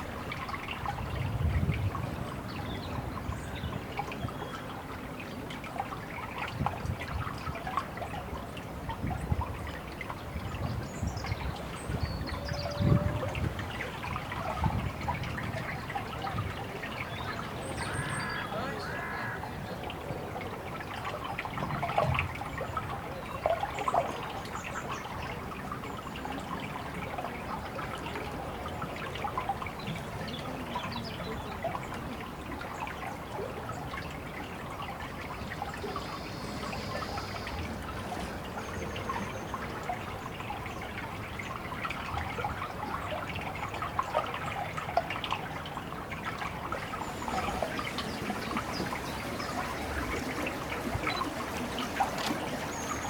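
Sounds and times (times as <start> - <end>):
water trickling and splashing: 0.0 - 53.0.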